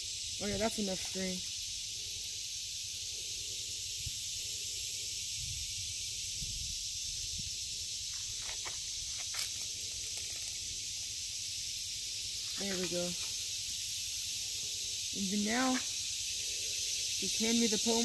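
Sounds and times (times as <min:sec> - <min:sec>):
high steady hiss: 0:00.0 - 0:18.0.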